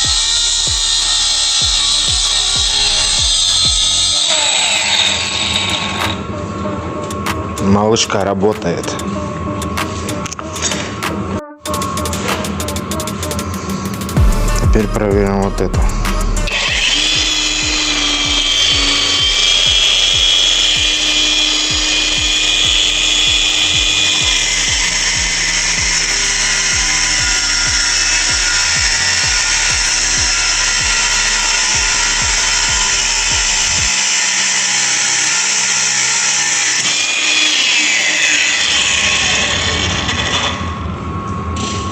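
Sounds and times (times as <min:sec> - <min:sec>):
angle grinder whining: 0:00.0 - 0:41.9.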